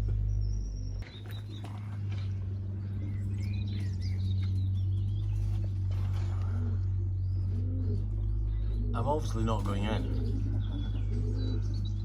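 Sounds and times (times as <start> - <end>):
small birds chirping: 0.0 - 12.0
steady low hum: 0.0 - 12.0
soft low cooing: 5.6 - 9.4.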